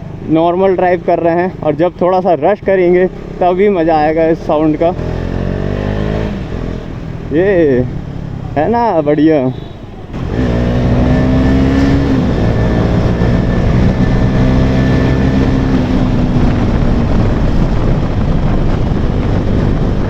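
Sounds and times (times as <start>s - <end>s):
road and wind noise: 0.0s - 20.0s
motorcycle engine accelerating: 2.7s - 8.7s, 10.1s - 20.0s.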